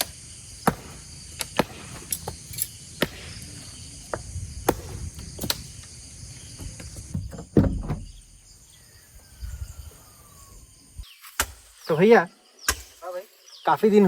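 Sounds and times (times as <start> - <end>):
insects chirping: 0.0 - 14.0
handling knocks and clicks: 6.5 - 8.2.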